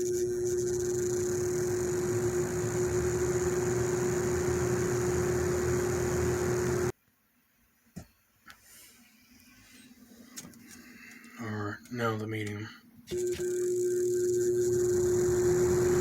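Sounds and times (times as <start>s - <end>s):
box fan motor hum and air rush: 0.0s - 6.9s, 14.4s - 16.0s.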